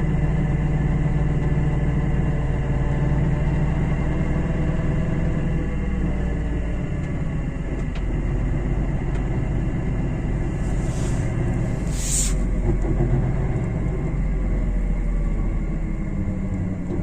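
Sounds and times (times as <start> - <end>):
car tyres rumbling: 6.7 - 17.0
short hiss: 10.6 - 12.5.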